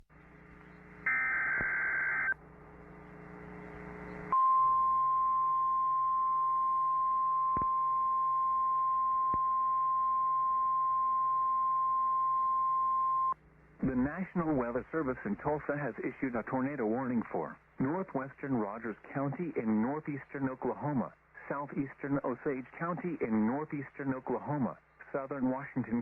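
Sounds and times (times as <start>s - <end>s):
radio hiss: 0.1s - 4.4s, 13.6s - 26.0s.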